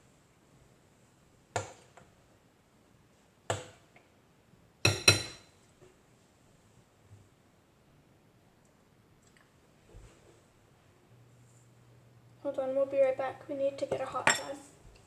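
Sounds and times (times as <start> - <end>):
utensil clinking against saucepan: 4.9 - 5.5.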